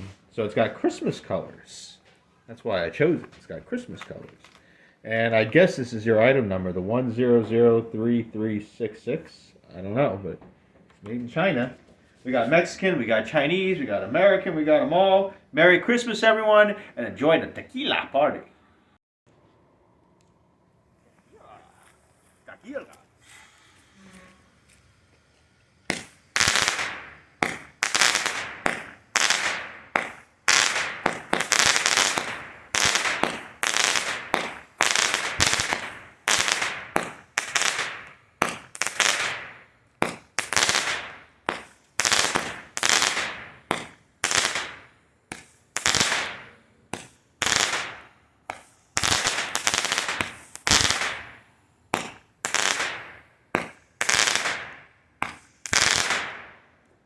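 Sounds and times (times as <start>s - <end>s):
fireworks cake firing: 20.8s - 56.8s.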